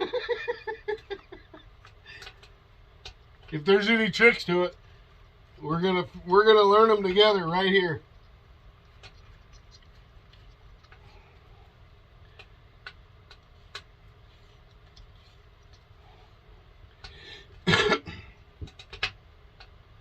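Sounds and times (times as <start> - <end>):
plastic parts clicking and knocking: 18.6 - 19.8.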